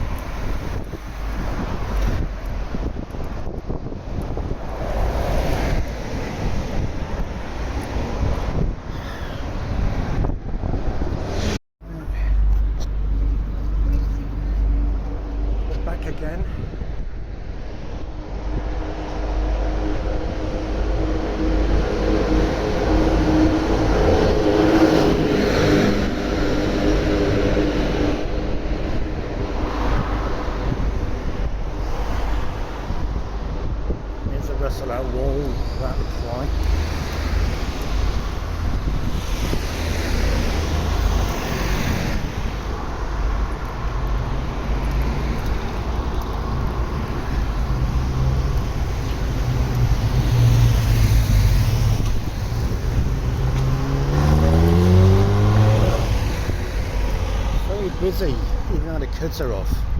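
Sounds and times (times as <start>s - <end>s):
road traffic rumble: 0.0s - 59.9s
vehicle passing by: 17.7s - 33.6s, 34.3s - 58.7s.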